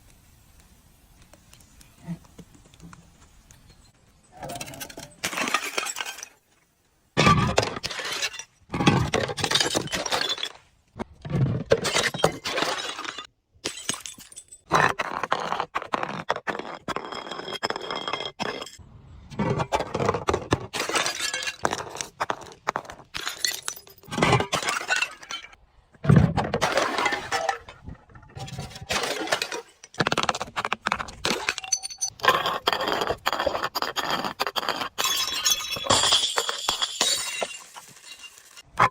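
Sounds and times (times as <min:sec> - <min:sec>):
glass bottles shattering: 0:04.4 - 0:06.4, 0:07.2 - 0:10.6, 0:11.7 - 0:14.7, 0:20.7 - 0:22.0, 0:23.2 - 0:25.6, 0:26.6 - 0:27.8, 0:31.2 - 0:32.2, 0:35.0 - 0:38.7
glass shards clinking: 0:31.4 - 0:32.2, 0:35.0 - 0:38.7.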